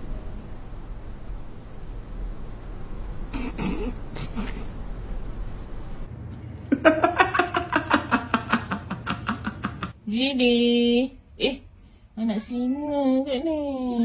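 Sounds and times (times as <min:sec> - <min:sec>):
low hum: 0:00.0 - 0:14.0
person laughing hard: 0:03.4 - 0:04.7, 0:06.7 - 0:10.0.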